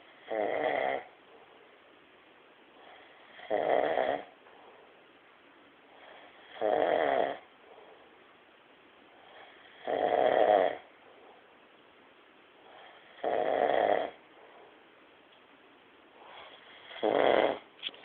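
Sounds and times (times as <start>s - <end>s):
loud rhythmic snoring: 0.0s - 1.2s, 2.8s - 4.4s, 5.9s - 7.9s, 9.2s - 10.9s, 12.6s - 14.2s, 16.2s - 17.8s
quiet breaths: 0.0s - 18.0s.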